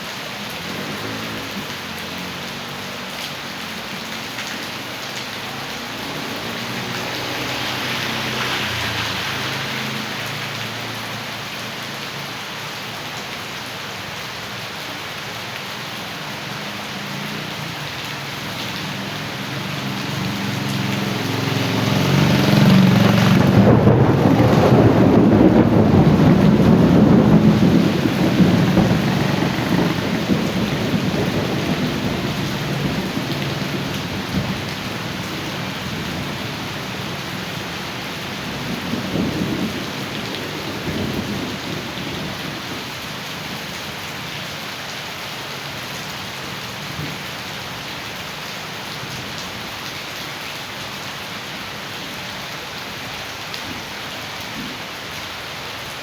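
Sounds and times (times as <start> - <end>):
heavy rain pouring: 0.0 - 56.0
thunder rumbling: 19.8 - 42.8.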